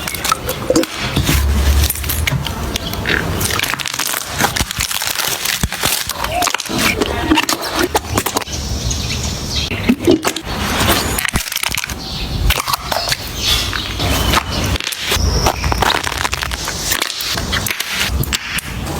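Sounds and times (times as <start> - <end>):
sticky slime crackles and pops: 0.0 - 8.5, 14.3 - 18.7.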